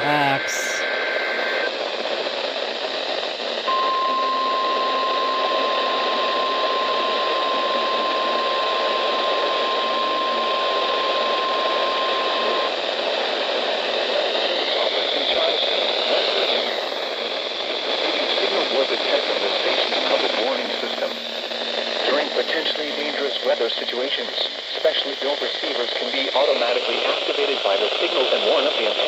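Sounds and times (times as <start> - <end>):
heavy radio static: 13.9 - 29.0
steady warning alarm tone: 19.7 - 24.8
two-tone data burst warble: 20.0 - 25.0.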